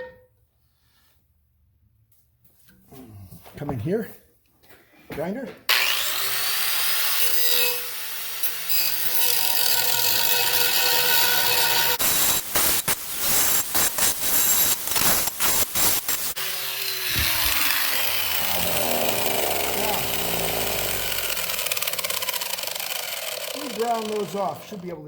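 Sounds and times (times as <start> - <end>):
electric grinder grinding metal: 5.7 - 25.0.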